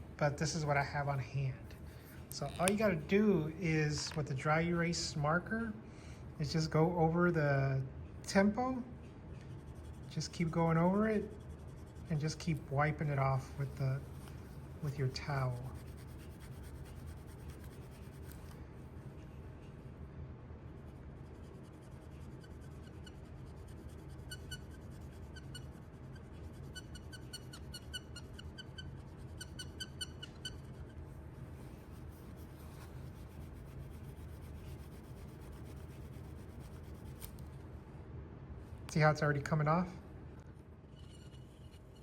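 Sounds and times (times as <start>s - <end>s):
steady low hum: 0.0s - 42.0s
marker tip squeaking: 2.3s - 3.1s, 22.4s - 31.0s.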